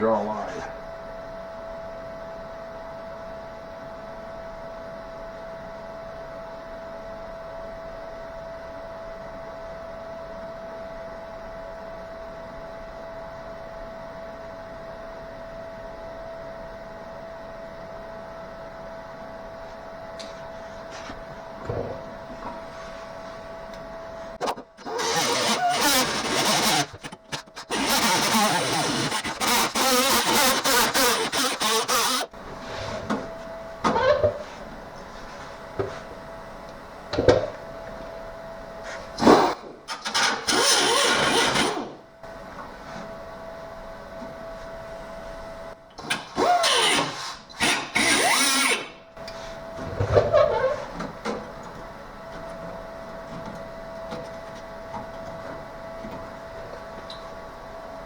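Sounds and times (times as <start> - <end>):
angle grinder cutting sheet metal: 24.8 - 32.3, 40.2 - 41.9.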